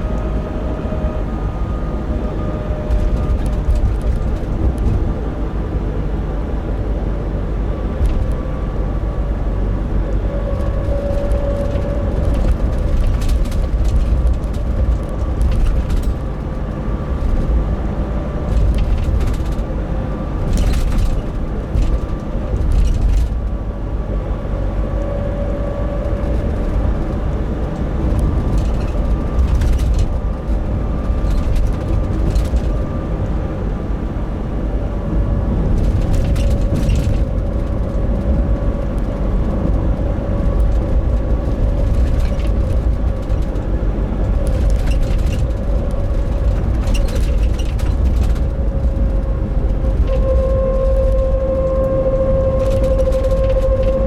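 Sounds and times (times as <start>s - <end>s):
diesel van engine rumble: 0.0s - 54.0s
steady drone hum: 48.6s - 54.0s.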